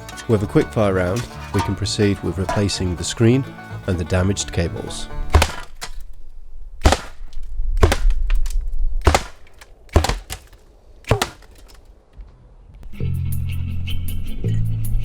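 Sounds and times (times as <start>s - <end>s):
music: 0.0s - 5.4s, 12.2s - 15.0s
apple cannon shots: 5.3s - 6.0s, 6.8s - 11.8s
apples smashing into laptop: 5.3s - 6.0s, 6.8s - 11.8s.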